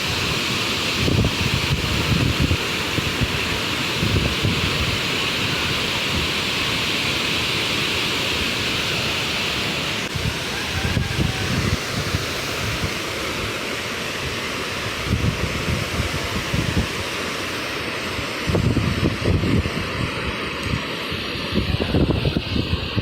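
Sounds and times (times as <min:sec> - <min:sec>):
wind gusting on microphone: 0:00.0 - 0:07.1, 0:08.3 - 0:23.0
waterfall rushing: 0:00.0 - 0:23.0.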